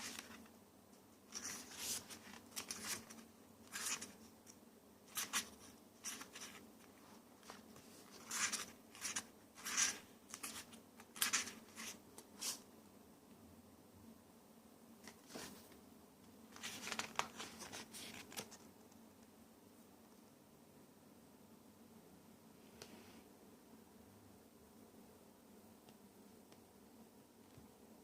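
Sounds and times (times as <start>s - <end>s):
paper rustling: 0.0s - 0.5s, 1.3s - 4.3s, 5.1s - 12.6s, 15.1s - 15.7s, 16.5s - 18.7s.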